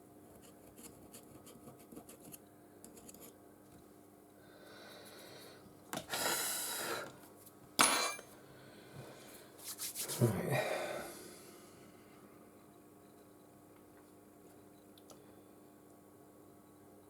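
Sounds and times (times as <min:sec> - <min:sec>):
rubbing and scraping: 0:09.6 - 0:10.2.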